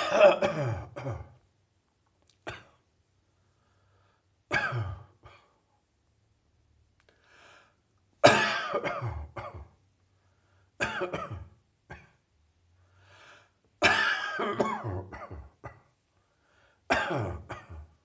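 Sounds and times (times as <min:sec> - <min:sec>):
person coughing: 0:00.0 - 0:01.4, 0:02.5 - 0:02.8, 0:04.5 - 0:05.6, 0:08.2 - 0:09.8, 0:10.8 - 0:12.2, 0:13.8 - 0:16.0, 0:16.9 - 0:18.0
faint breaths: 0:03.2 - 0:04.4, 0:07.0 - 0:07.9, 0:10.0 - 0:10.8, 0:12.7 - 0:13.7, 0:16.1 - 0:16.9.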